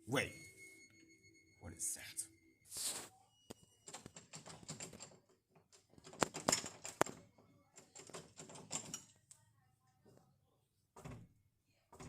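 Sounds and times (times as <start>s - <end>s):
irregular clicking and tapping: 3.5s - 7.2s.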